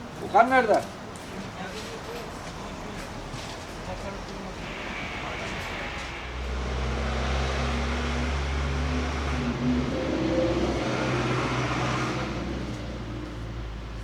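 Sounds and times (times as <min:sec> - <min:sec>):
vehicle engine humming: 0:00.9 - 0:14.0
steady hiss: 0:04.0 - 0:07.4.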